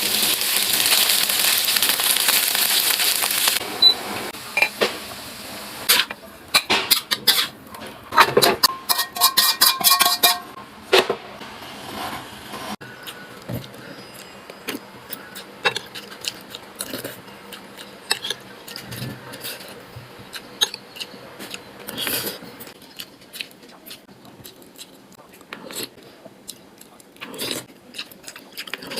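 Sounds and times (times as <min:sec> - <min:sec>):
utensils clinking against dishes: 0:05.9 - 0:10.6.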